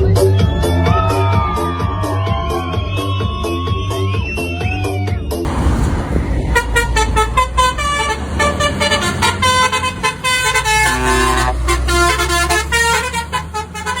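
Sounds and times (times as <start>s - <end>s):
low engine rumble: 5.5s - 14.0s
truck horn short notes: 6.4s - 14.0s.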